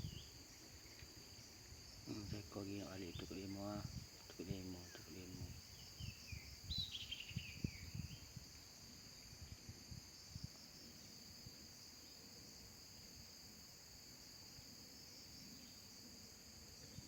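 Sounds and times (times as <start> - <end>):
insects droning: 0.0 - 17.0
high falling bird chirps: 4.8 - 8.4.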